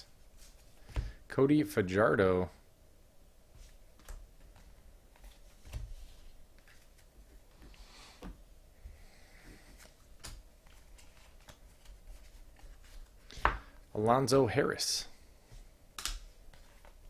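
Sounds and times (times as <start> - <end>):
cards sliding rustle: 9.5 - 13.6.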